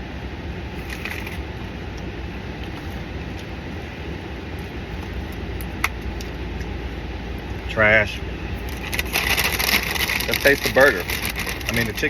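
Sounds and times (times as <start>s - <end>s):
car cabin hum: 0.0s - 12.0s
faint clicks and rustles: 8.6s - 12.0s.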